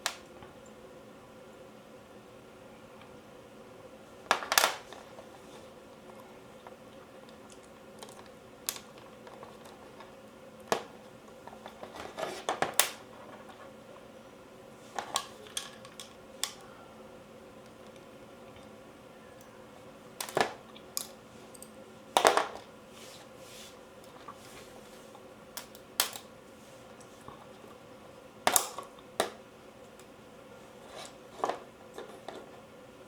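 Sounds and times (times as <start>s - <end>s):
clicks and knocks of parts handled: 14.9s - 16.7s, 20.2s - 22.7s, 25.6s - 26.3s.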